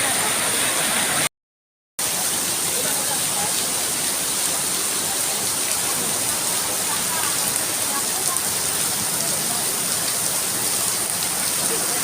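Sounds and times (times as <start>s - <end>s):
rain falling: 0.0s - 1.3s, 2.0s - 12.0s
rushing river water: 0.0s - 1.3s, 2.0s - 12.0s.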